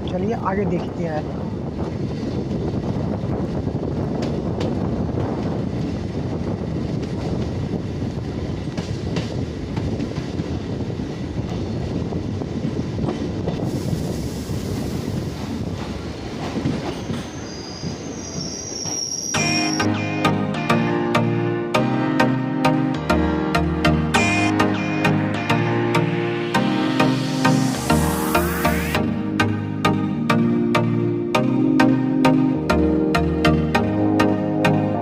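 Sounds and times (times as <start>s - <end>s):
train wheels rumbling on rails: 0.0s - 19.9s
clacks over rail joints: 8.6s - 10.5s
high thin squeal: 17.0s - 20.0s.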